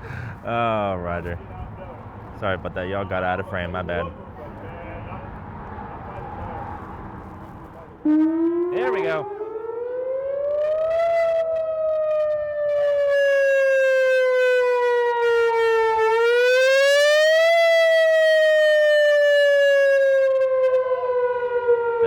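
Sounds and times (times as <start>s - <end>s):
warning siren wailing: 7.9s - 22.0s.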